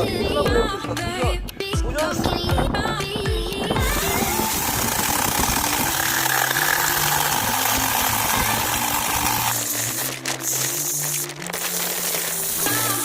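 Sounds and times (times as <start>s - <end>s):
background music: 0.0s - 13.0s
electric chainsaw cutting log: 3.8s - 13.0s.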